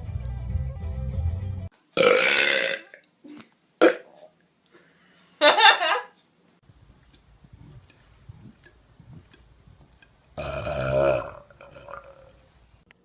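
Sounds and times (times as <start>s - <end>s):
person burping: 2.0s - 4.2s, 10.4s - 12.4s.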